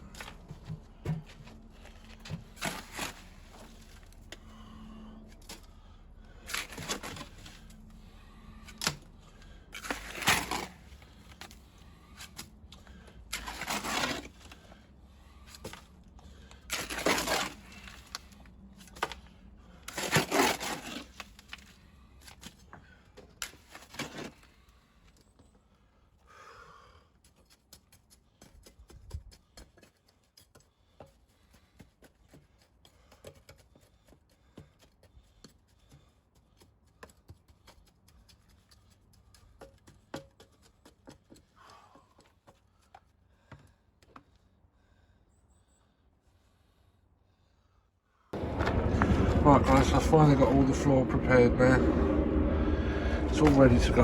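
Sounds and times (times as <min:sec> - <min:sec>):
hand tool scraping gritty material: 0:00.0 - 0:24.9, 0:27.2 - 0:43.0.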